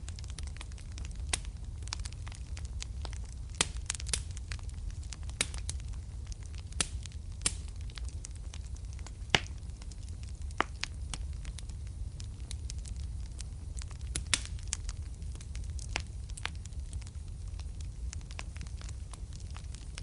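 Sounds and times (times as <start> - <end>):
wood fire crackling and popping: 0.0 - 20.0.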